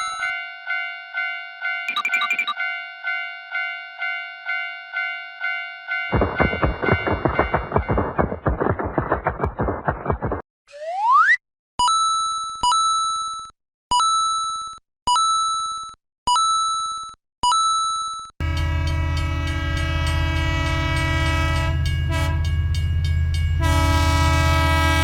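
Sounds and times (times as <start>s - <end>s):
level-crossing warning bell ringing: 0.0s - 8.1s, 18.4s - 24.8s
train rumbling past: 6.1s - 9.5s, 18.4s - 25.0s
train horn chord: 18.4s - 22.6s, 23.5s - 25.0s.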